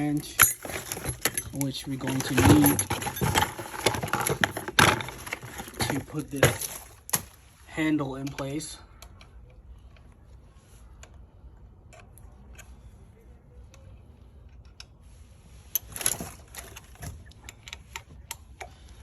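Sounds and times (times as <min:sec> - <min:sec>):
tool clattering: 0:00.0 - 0:07.4
clicks and taps of bike parts: 0:08.1 - 0:10.1, 0:13.7 - 0:15.0, 0:15.8 - 0:19.0.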